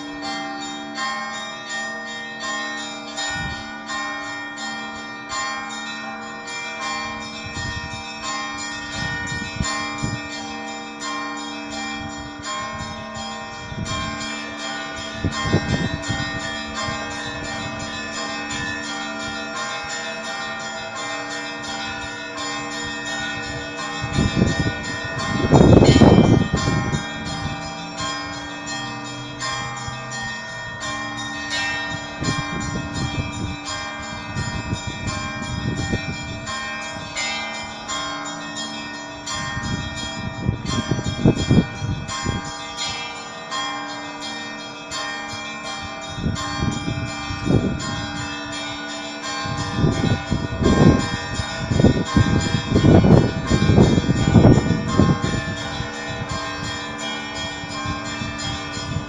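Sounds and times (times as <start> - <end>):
deep low bell: 0.0 - 59.0
ringing middle bells: 0.0 - 59.0.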